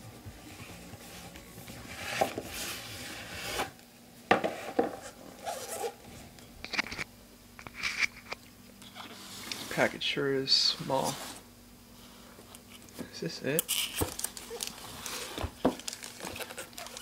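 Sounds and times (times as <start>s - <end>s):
cardboard box sliding rub: 1.8s - 3.8s.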